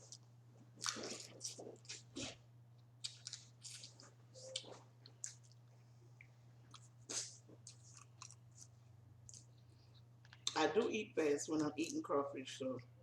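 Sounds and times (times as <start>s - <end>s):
wet chewing and crackling: 0.0s - 10.6s
faint low hum: 0.0s - 13.0s.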